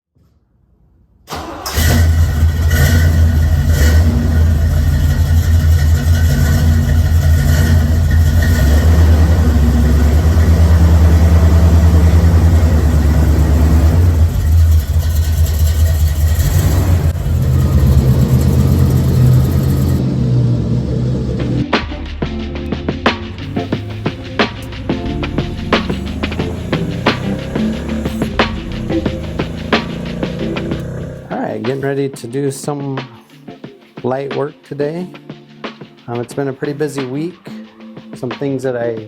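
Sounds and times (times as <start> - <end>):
car engine starting: 1.3 - 31.8
car engine idling loudly: 1.8 - 21.6, 23.4 - 31.3.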